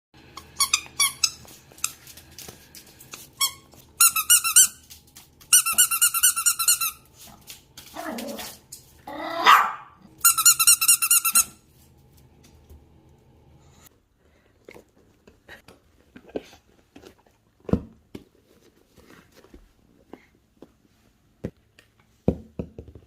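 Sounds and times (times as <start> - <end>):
rubber squeaky toy squeaks: 0.4 - 1.5, 5.5 - 7.0, 10.2 - 11.5.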